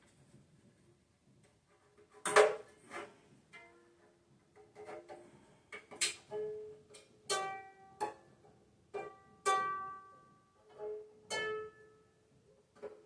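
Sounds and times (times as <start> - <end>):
banjo ukulele notes plucked: 6.1 - 8.3, 8.9 - 12.1.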